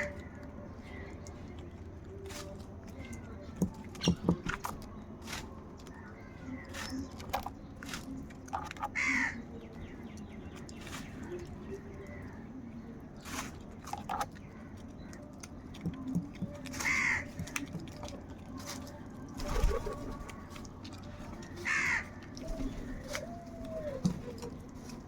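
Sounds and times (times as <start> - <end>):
crows cawing: 9.0 - 9.4, 16.8 - 17.6, 21.6 - 22.2.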